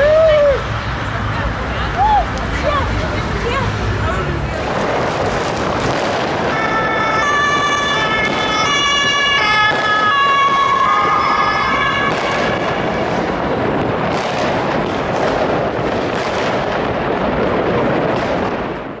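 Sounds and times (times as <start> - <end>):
continuous rush of noise: 0.0 - 19.0
fireworks bangs and crackles: 0.0 - 19.0
police two-tone siren: 6.5 - 12.9.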